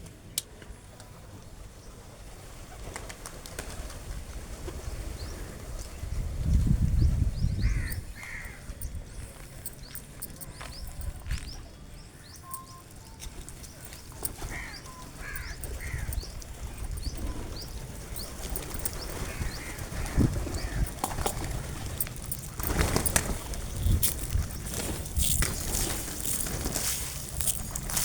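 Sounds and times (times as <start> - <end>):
birds chirping: 5.1 - 28.0
lower bird calls: 7.0 - 22.1
rustling noise: 13.2 - 28.0.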